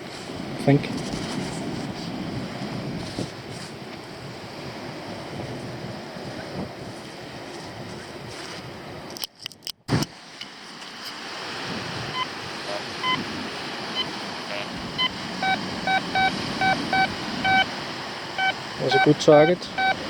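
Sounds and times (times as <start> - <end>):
surf hiss: 0.0 - 8.8, 9.9 - 20.0
wind on microphone: 0.0 - 9.2, 9.8 - 20.0
metal detector beeping: 12.1 - 12.3, 13.0 - 13.2, 13.9 - 17.8, 18.4 - 20.0.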